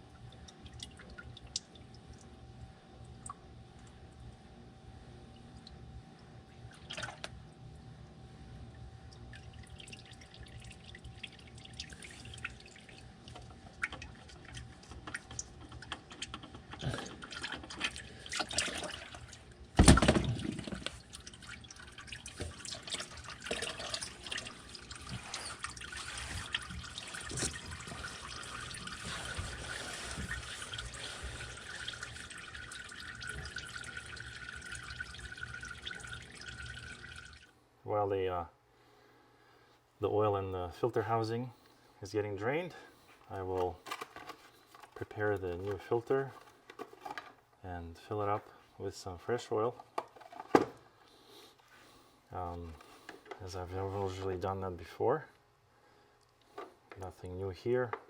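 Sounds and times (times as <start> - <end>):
oil trickling and dripping: 0.0 - 4.4, 5.3 - 19.6, 20.6 - 37.5.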